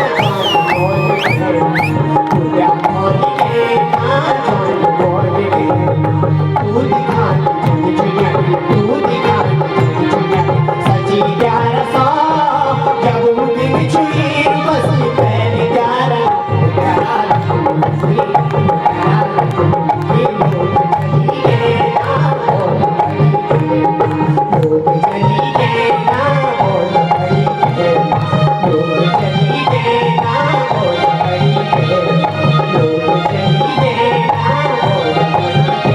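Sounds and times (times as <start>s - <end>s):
folk music: 0.0s - 2.3s.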